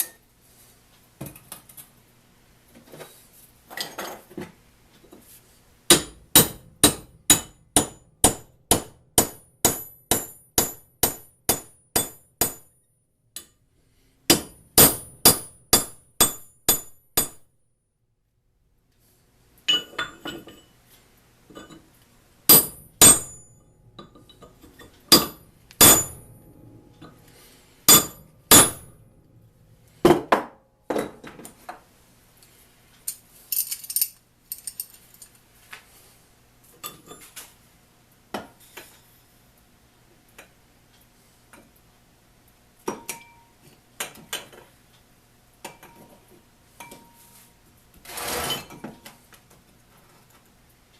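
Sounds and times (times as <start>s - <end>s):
hammer striking steel: 5.9s - 12.7s, 14.3s - 17.4s, 22.5s - 24.2s, 25.1s - 27.2s, 27.9s - 29.0s.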